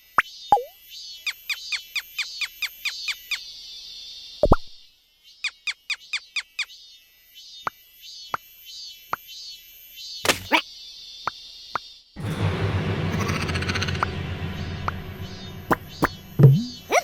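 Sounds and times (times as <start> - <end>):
high chirring background: 12.2 - 17.0.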